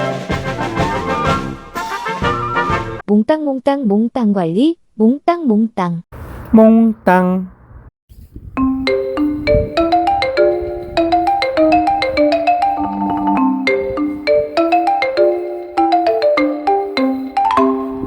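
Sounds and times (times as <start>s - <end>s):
mallet instrument melody: 8.6s - 18.0s.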